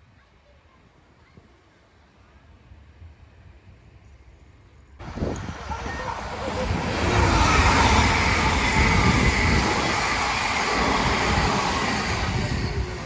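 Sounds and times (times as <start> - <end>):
train rumbling on rails: 5.0 - 13.0.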